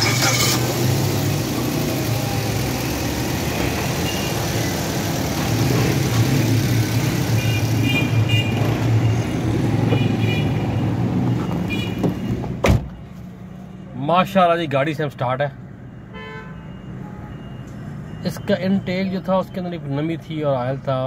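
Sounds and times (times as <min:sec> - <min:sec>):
car engine idling: 0:00.0 - 0:07.9.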